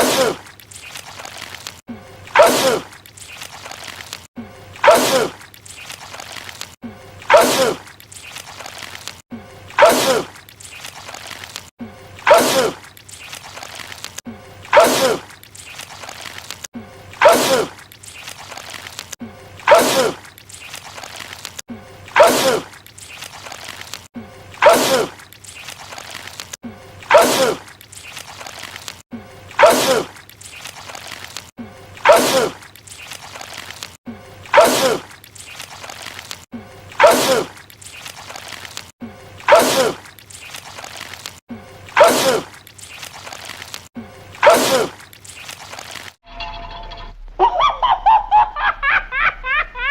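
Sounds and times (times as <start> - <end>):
man sneezing: 29.6 - 30.1, 32.0 - 32.6, 37.0 - 37.5, 42.0 - 42.5, 44.4 - 45.0.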